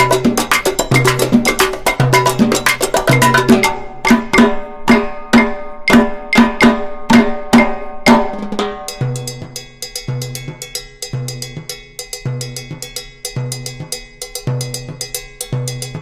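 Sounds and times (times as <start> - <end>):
drum and percussion music: 0.0 - 16.0.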